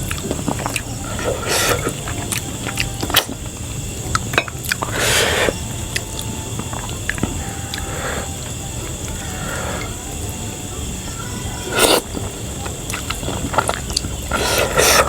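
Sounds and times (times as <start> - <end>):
chewing: 0.0 - 15.0
noisy burst: 0.0 - 15.0.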